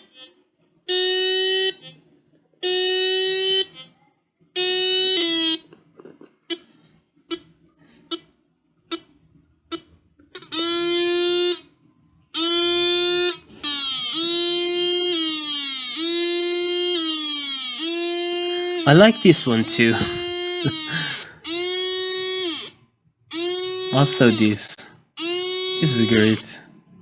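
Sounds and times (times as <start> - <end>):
buzzy alarm beeps: 12.5 - 22.7, 23.3 - 26.6.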